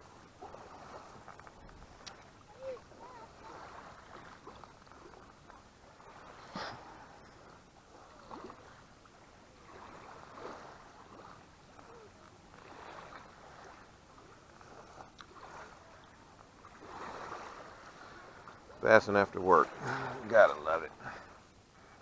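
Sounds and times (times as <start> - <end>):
lake water lapping: 0.0 - 22.0.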